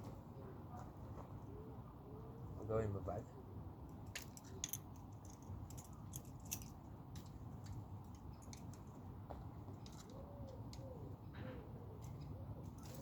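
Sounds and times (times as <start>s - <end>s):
rummaging clicks and rustles: 3.9s - 13.0s.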